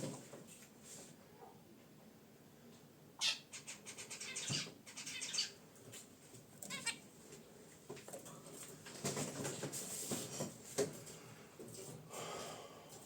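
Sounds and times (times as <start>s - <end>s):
zebra finches chattering: 3.2s - 5.6s.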